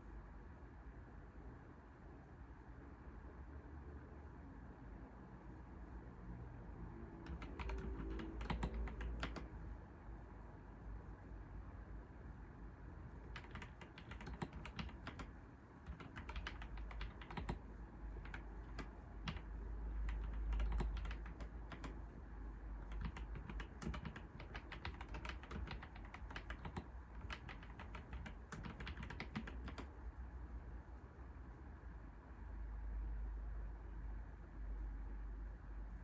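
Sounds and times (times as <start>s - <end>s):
computer keyboard typing: 7.2s - 9.6s, 13.3s - 22.2s, 22.8s - 30.1s
low background rumble: 7.2s - 36.0s.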